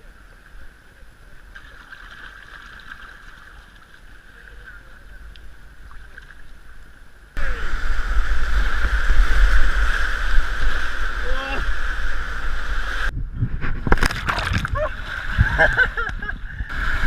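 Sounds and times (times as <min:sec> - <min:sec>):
sharp water splashes: 0:01.5 - 0:04.2, 0:14.0 - 0:15.4
wind buffeting on microphone: 0:07.4 - 0:17.0.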